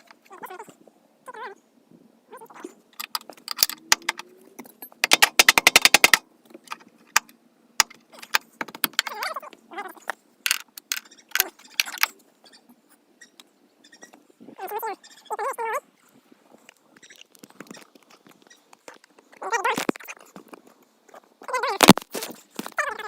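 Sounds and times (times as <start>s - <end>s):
metal tool clicks and knocks: 3.0s - 9.2s, 10.5s - 12.2s.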